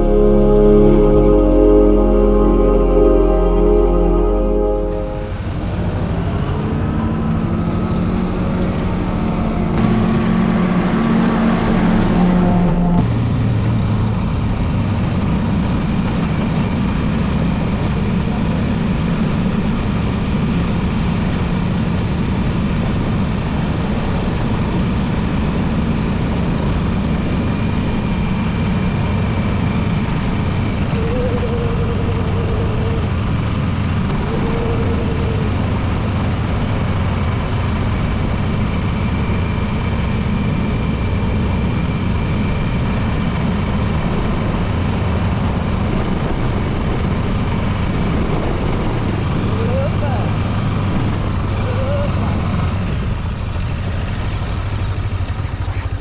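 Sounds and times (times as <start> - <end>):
motorcycle engine drone: 0.0 - 5.4, 6.5 - 13.3
short faint tones: 0.0 - 5.4.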